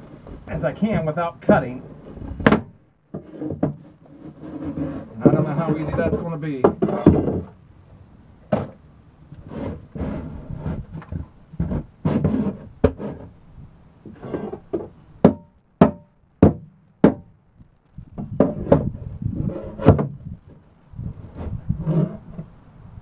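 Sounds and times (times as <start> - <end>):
knocks on wooden enclosure: 2.4 - 3.8, 8.5 - 8.8, 14.7 - 17.3, 18.2 - 18.9, 19.8 - 20.2.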